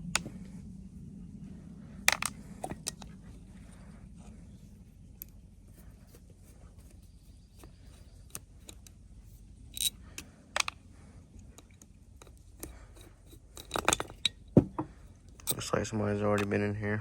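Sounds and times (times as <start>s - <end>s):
metal parts clicking: 9.7s - 10.8s, 11.5s - 14.6s.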